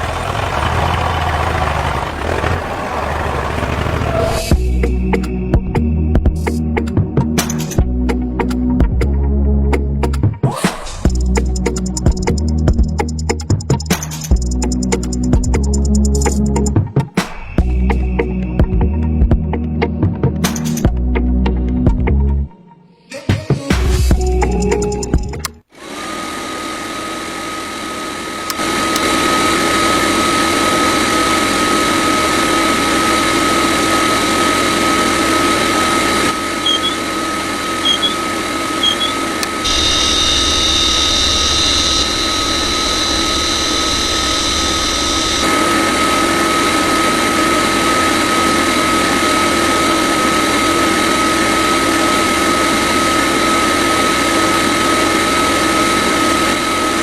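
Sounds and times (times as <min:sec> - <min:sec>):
small motor whining: 0:25.8 - 0:49.4
short high chirps: 0:36.6 - 0:37.1, 0:37.8 - 0:38.2, 0:38.8 - 0:42.0.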